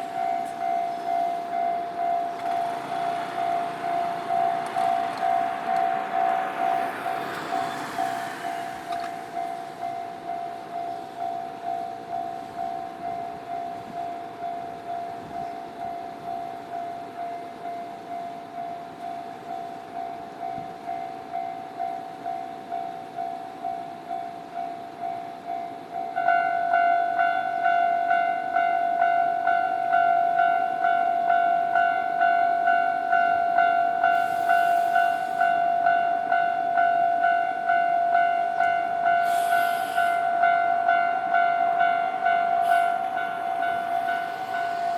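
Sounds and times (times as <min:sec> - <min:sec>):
level-crossing warning bell ringing: 0:00.0 - 0:44.9
brief hisses: 0:39.2 - 0:40.2.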